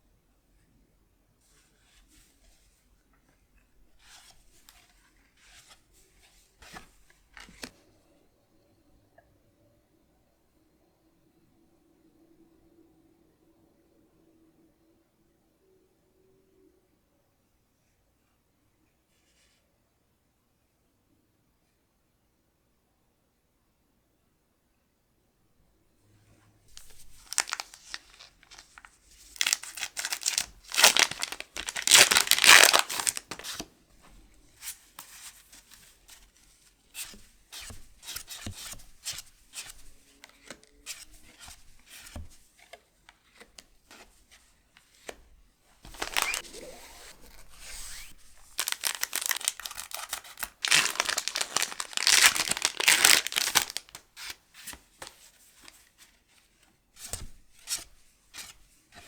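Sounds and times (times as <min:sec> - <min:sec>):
foil wrappers tearing and crinkling: 0:26.8 - 0:28.8, 0:29.4 - 0:33.5, 0:45.9 - 0:54.0.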